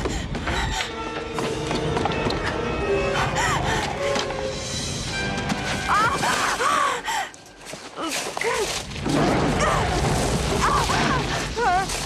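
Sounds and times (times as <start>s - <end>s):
tense music: 0.0s - 8.0s.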